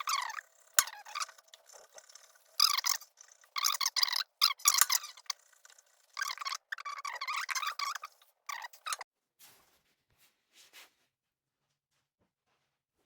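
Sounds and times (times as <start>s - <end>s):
scraping and rattling on starter motor: 0.0s - 9.0s.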